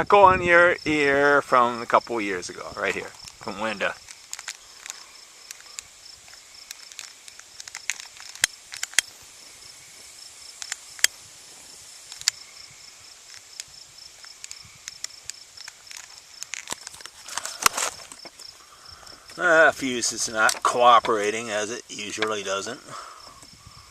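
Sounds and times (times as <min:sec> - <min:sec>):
crickets chirping: 0:00.0 - 0:23.9.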